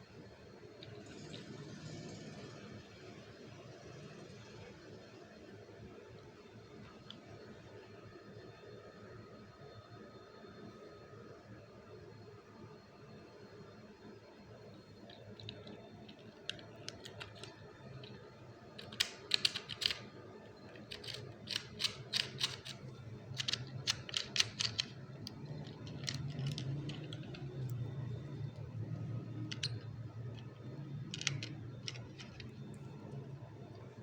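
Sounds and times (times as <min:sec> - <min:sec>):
plastic toy pieces clicking: 0:15.1 - 0:27.8, 0:29.4 - 0:32.6.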